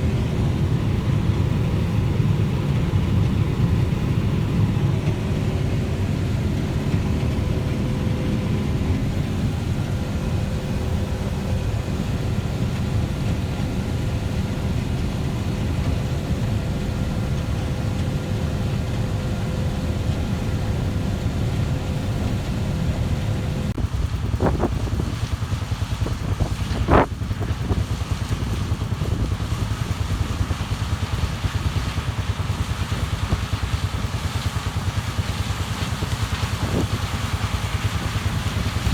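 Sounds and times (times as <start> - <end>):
farm machinery rumbling: 0.0 - 38.9.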